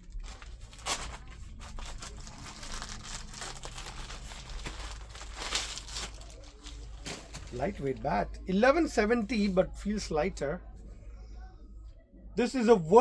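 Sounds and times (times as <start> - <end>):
packaging rustling and tearing: 0.0 - 7.9.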